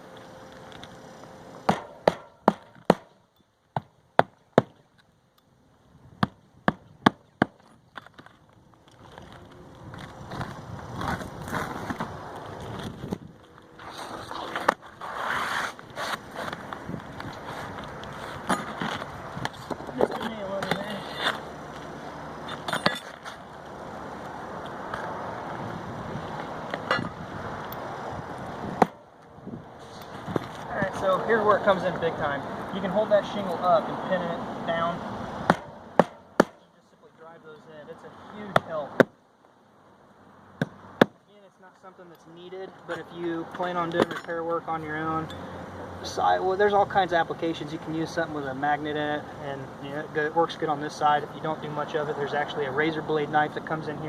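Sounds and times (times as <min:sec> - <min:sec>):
hatchet hammering nails: 0:01.7 - 0:03.2, 0:35.5 - 0:36.6
wind rushing over microphone: 0:09.3 - 0:14.4, 0:15.8 - 0:20.0, 0:24.4 - 0:31.6.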